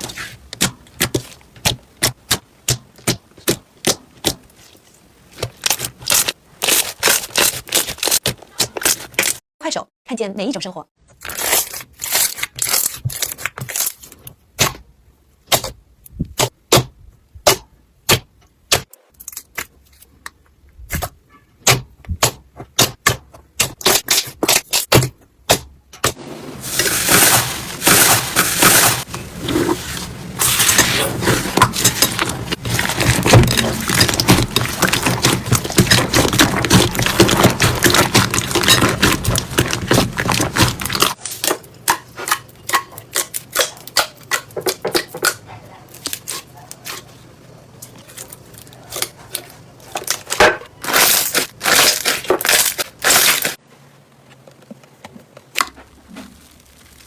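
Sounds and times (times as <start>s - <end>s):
slime crackling and squishing: 0.0s - 9.4s, 11.2s - 14.3s, 26.6s - 41.5s, 45.9s - 53.6s, 55.4s - 57.0s.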